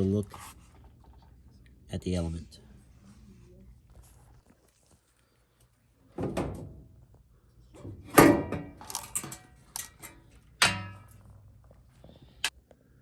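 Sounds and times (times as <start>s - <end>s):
dryer panel knocks and clatter: 6.2s - 6.9s, 7.8s - 8.8s
metal panel rattling: 6.2s - 6.9s.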